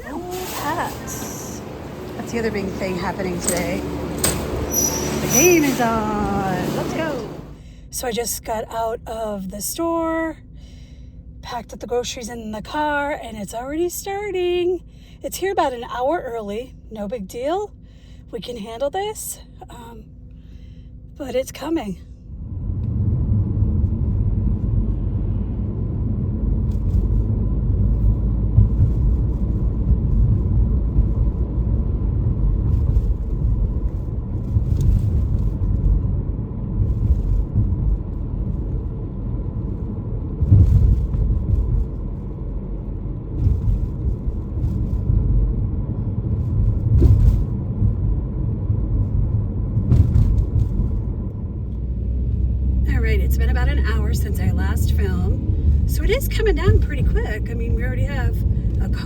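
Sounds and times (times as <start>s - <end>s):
car road and engine rumble: 0.0s - 59.0s.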